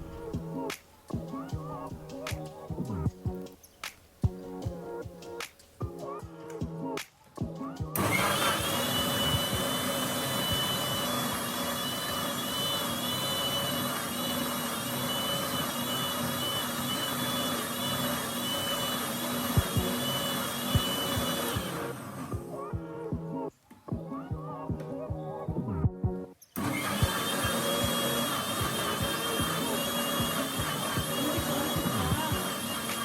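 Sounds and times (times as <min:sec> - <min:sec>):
mixer grinder whining: 0:00.0 - 0:00.8, 0:08.0 - 0:22.7, 0:26.6 - 0:33.0.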